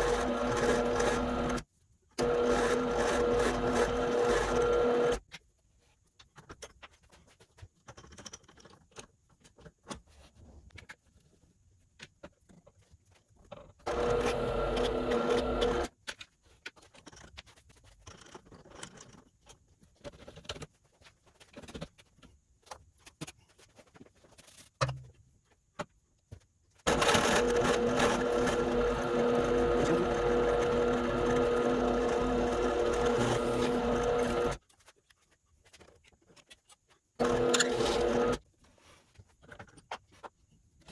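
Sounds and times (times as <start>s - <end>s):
drill press motor humming: 0.0s - 1.6s, 2.2s - 5.2s, 13.9s - 15.9s, 26.9s - 34.6s, 37.2s - 38.4s
small clicks and handling: 6.1s - 10.1s, 14.7s - 26.5s, 32.9s - 38.5s, 39.1s - 40.9s.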